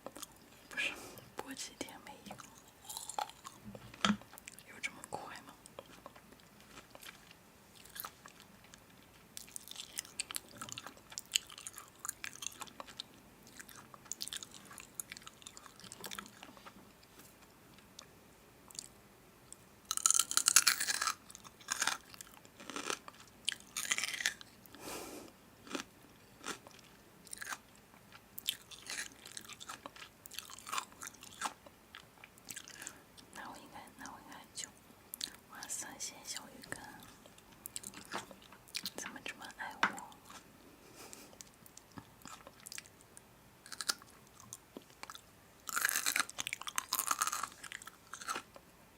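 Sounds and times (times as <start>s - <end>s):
person chewing crunchy food: 2.3s - 4.6s, 5.2s - 16.8s, 18.7s - 18.9s, 19.9s - 33.3s, 36.7s - 39.0s, 41.1s - 48.6s.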